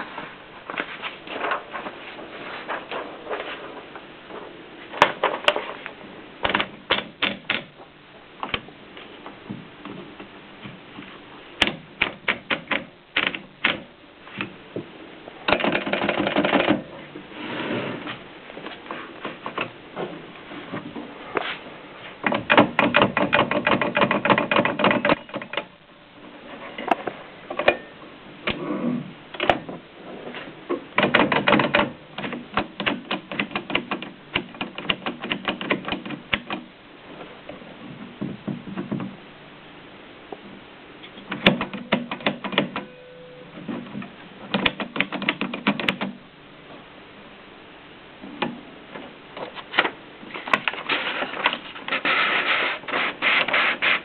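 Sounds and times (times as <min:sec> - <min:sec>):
typewriter clicking: 0:11.6 - 0:13.9, 0:15.5 - 0:16.8, 0:22.2 - 0:25.7, 0:31.0 - 0:36.7, 0:41.3 - 0:42.9, 0:44.5 - 0:46.2.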